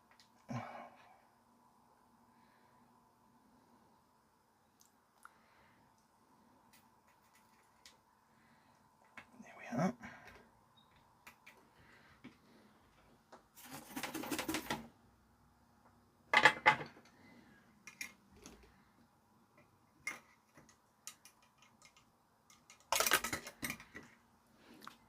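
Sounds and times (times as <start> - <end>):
rustling scrape: 13.6 - 14.8
tools clicking and tapping: 20.0 - 24.1.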